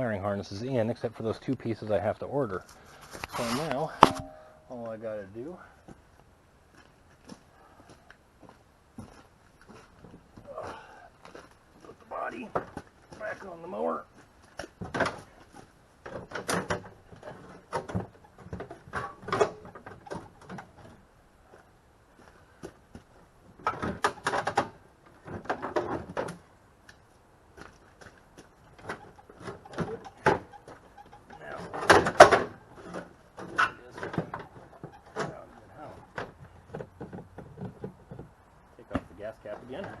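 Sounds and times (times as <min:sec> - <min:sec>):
mower panels clunking and rattling: 0:14.5 - 0:21.1, 0:23.4 - 0:26.5, 0:27.9 - 0:40.0.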